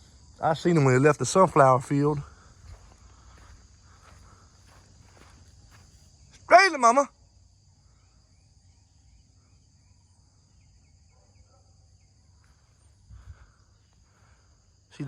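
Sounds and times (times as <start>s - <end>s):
faint chirps: 7.4s - 15.0s.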